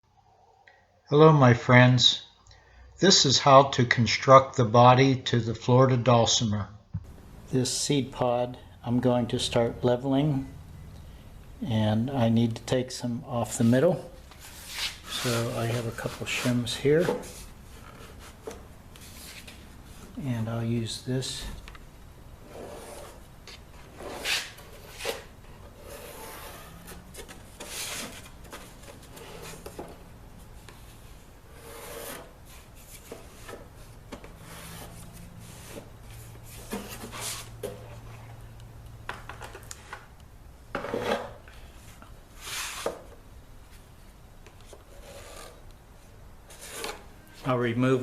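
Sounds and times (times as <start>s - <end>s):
hand plane shaving wood: 14.5s - 17.4s, 24.0s - 28.2s, 31.6s - 32.3s.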